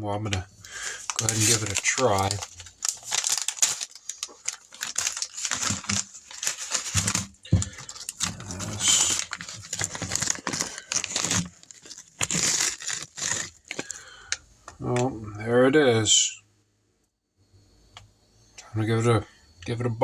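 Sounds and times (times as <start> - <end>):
packaging crinkling: 0.6 - 14.4.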